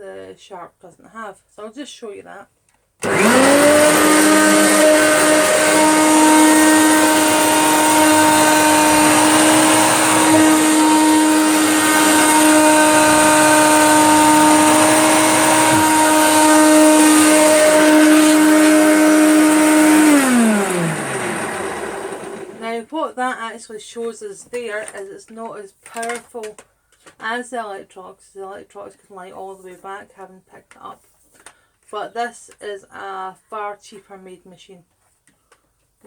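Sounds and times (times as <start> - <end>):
vacuum cleaner whine: 3.0 - 22.7.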